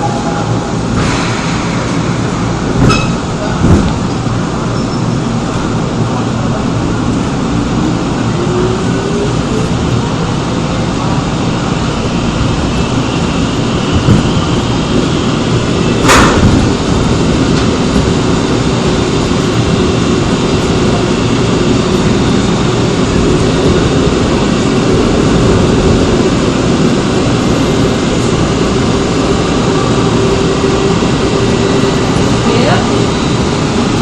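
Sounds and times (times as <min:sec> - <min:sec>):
train wheels rumbling: 0:00.0 - 0:34.0
sharp bang: 0:01.0 - 0:03.9.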